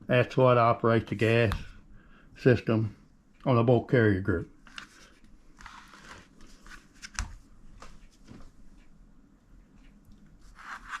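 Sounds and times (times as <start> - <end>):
soft rustling: 4.6 - 9.0.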